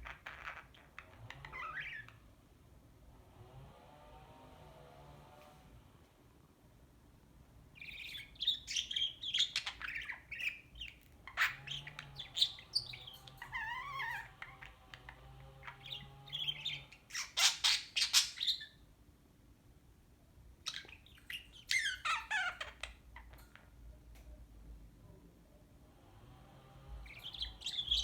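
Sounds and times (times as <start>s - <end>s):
budgerigar chattering and squawking: 7.8s - 18.7s.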